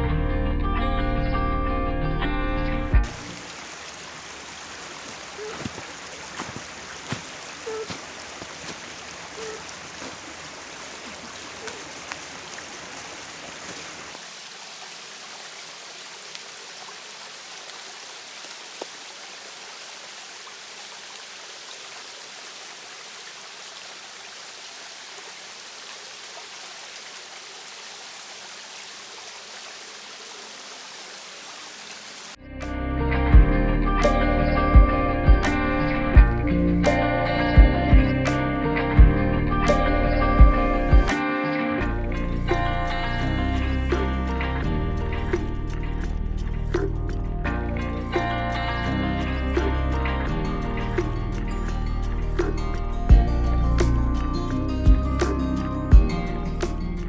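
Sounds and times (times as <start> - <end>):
stream water rushing: 1.0 - 32.4, 33.4 - 45.2
light clicks and drips: 2.9 - 14.3.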